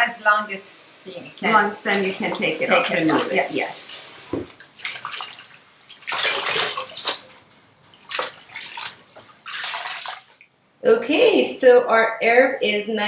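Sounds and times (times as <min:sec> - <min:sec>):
water splashing and running: 0:00.1 - 0:10.5.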